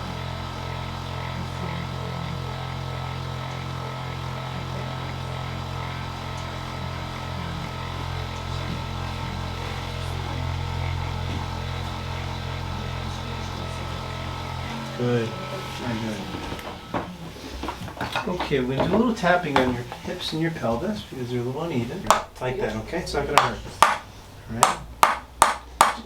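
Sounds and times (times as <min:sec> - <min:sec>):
electric massager motor humming: 0:00.0 - 0:26.0.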